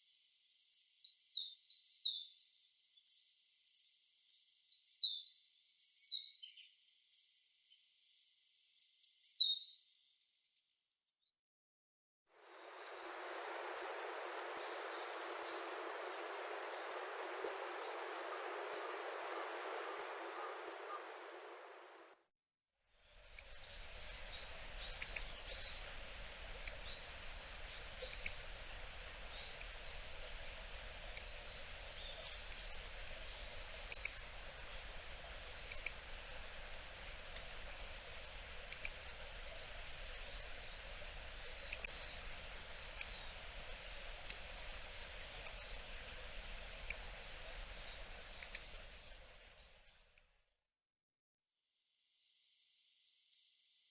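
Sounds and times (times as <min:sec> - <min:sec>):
sharp high bird calls: 0:12.4 - 0:22.0
faint hiss: 0:12.4 - 0:22.2, 0:23.0 - 0:50.2.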